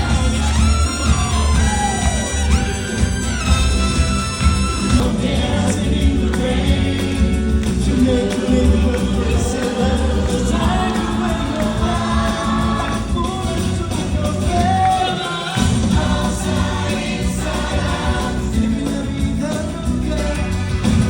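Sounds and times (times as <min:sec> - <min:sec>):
pulsing bass beat: 0:00.0 - 0:21.0
choir-like singing: 0:04.7 - 0:21.0.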